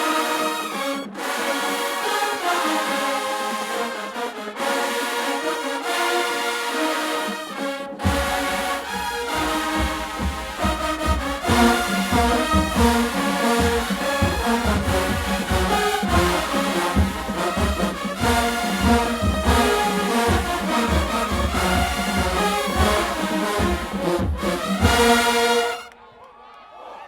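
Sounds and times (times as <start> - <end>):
brass horns playing: 0.0 - 26.0
bass drums beating: 8.1 - 25.4.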